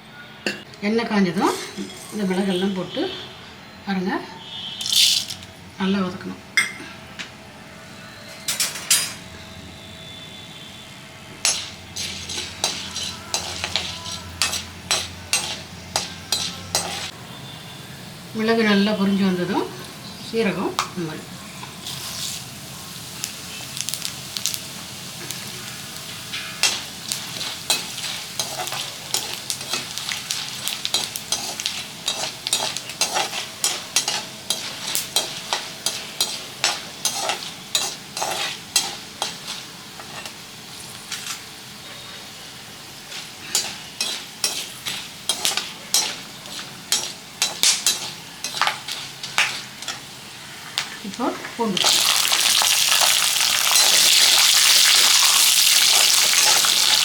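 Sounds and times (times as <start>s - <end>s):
spices sizzling in hot oil: 4.4s - 5.5s, 10.6s - 57.0s
spatula scraping a pan: 11.4s - 17.1s, 26.2s - 40.4s, 43.1s - 50.0s.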